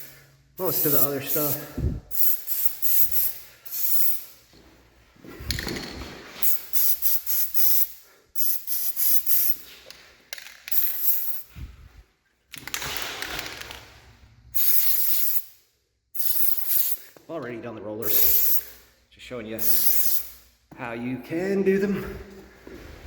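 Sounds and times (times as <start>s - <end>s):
aerosol can spraying: 0.0s - 4.4s, 6.4s - 9.8s, 10.7s - 11.5s, 14.6s - 15.6s, 16.2s - 17.1s, 18.0s - 18.8s, 19.6s - 20.4s.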